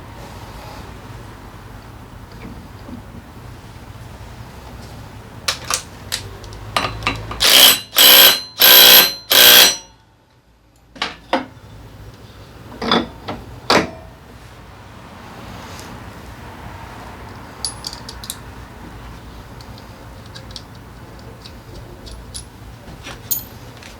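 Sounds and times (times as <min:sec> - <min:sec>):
tools clicking and knocking: 0:05.5 - 0:09.8, 0:17.6 - 0:18.4, 0:19.6 - 0:22.6
power tool running: 0:07.4 - 0:09.8.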